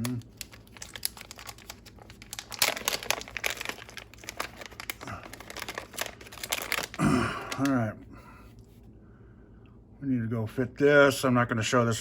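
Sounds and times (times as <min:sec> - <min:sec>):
rustling and crinkling: 0:00.0 - 0:07.8.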